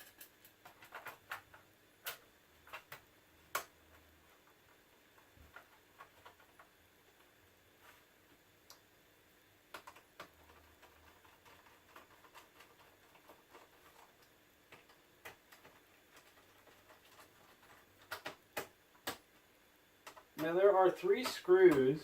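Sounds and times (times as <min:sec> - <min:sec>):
plastic cover and screws clicking: 0:09.7 - 0:19.2.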